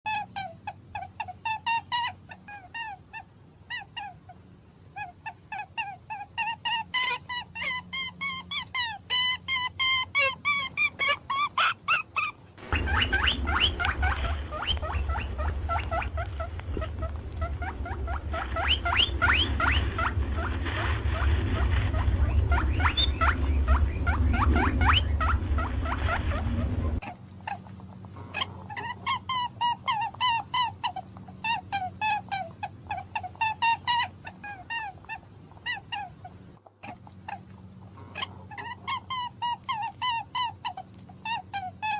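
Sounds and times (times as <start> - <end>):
small animals squeaking: 5.0 - 41.9
loud low rumble: 12.6 - 27.0.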